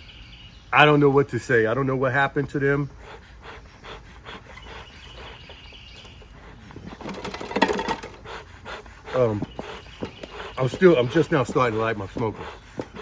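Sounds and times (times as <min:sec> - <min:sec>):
handling clicks and rustling: 0:06.0 - 0:08.2.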